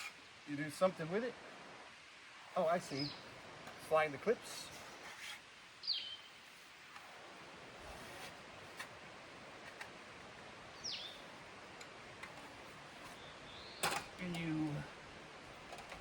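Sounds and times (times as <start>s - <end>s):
bird chirping: 2.9s - 3.3s, 5.8s - 6.4s, 10.7s - 11.3s, 13.0s - 14.4s.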